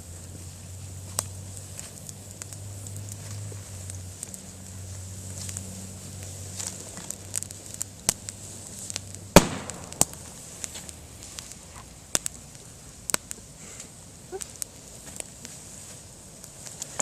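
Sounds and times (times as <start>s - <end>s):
campfire crackling: 0.0s - 17.0s
bamboo bursting with a bang: 9.3s - 10.9s.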